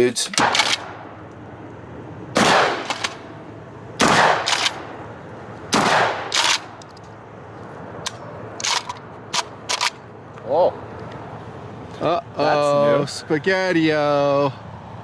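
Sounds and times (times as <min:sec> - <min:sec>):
shotgun shots: 0:00.4 - 0:01.1, 0:02.3 - 0:03.3, 0:04.0 - 0:04.9, 0:05.7 - 0:06.8.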